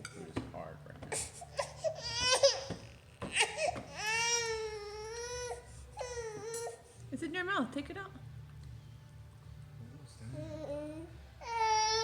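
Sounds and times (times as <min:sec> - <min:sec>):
baby crying: 0:01.1 - 0:06.8, 0:10.4 - 0:12.0.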